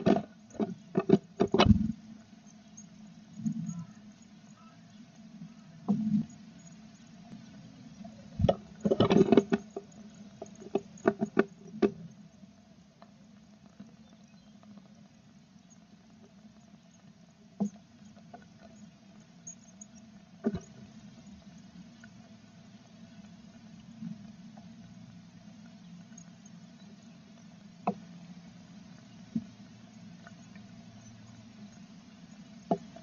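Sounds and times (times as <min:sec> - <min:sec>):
birds scratching and knocking in nest box: 0:00.0 - 0:02.0, 0:08.4 - 0:12.0
faint steady hum: 0:00.0 - 0:33.0.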